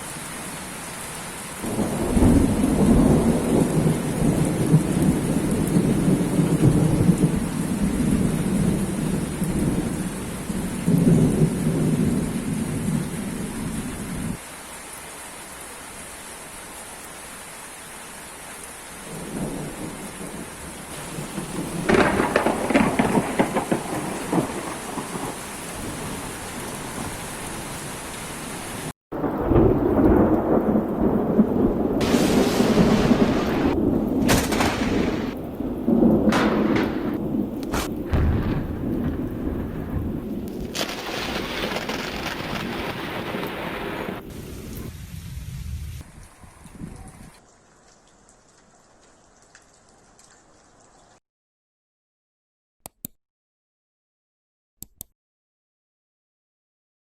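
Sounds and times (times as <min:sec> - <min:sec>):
heavy rain: 0:00.0 - 0:51.2
thunder rolling: 0:01.6 - 0:14.4, 0:19.1 - 0:27.1, 0:29.1 - 0:47.2.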